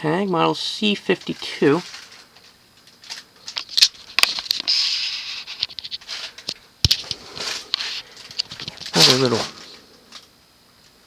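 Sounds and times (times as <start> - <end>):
handling clicks and rustles: 5.5 - 10.3.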